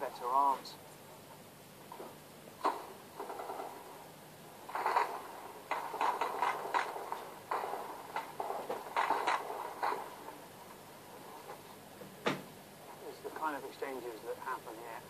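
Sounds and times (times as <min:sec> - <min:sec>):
gunshots: 0:02.6 - 0:11.6.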